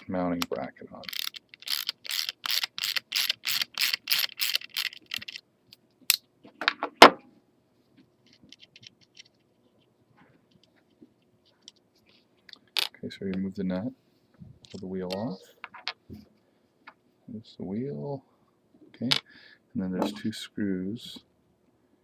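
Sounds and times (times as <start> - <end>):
ratchet wrench ratcheting: 1.0 - 5.4.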